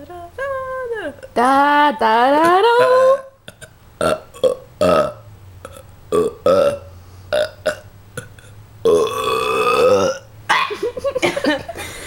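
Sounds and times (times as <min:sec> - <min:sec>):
person burping: 0:02.8 - 0:10.3.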